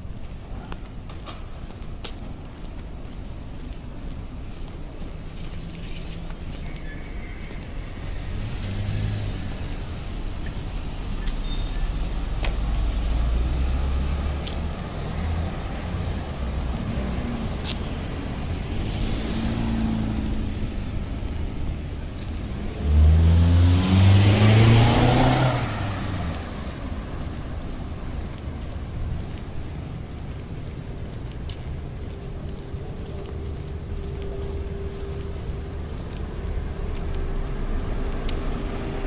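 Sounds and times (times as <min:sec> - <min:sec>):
low engine rumble: 0:02.0 - 0:39.0
vehicle accelerating past: 0:07.8 - 0:11.0, 0:11.9 - 0:28.0.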